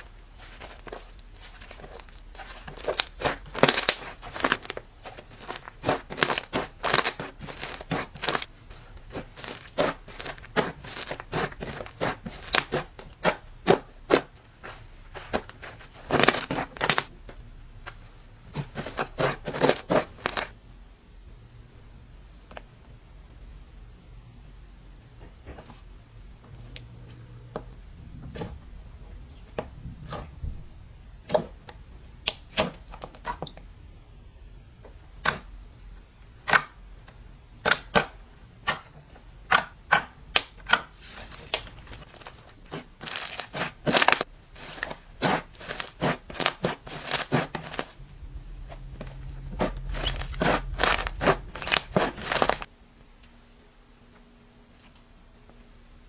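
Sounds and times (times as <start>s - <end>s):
slime kneaded with sticky pops: 0.0s - 20.5s, 36.4s - 48.0s, 48.8s - 52.7s.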